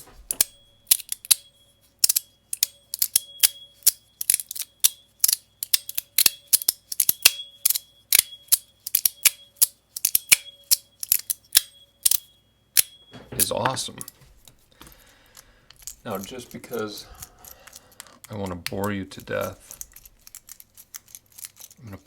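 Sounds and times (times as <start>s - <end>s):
tuning fork ringing: 0.3s - 4.2s, 11.6s - 13.8s
sharp metal clicks of slider: 2.0s - 12.2s.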